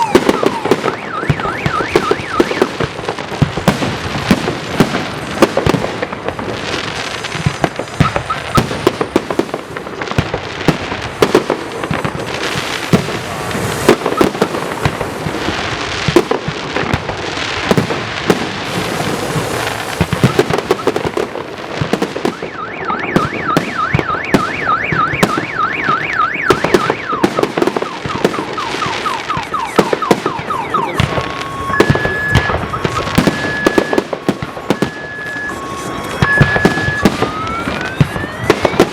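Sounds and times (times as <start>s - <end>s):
car alarm: 0.0s - 2.8s, 8.0s - 8.7s, 13.8s - 15.0s, 20.1s - 21.2s, 22.2s - 38.9s
fireworks bangs and crackle: 0.0s - 38.9s.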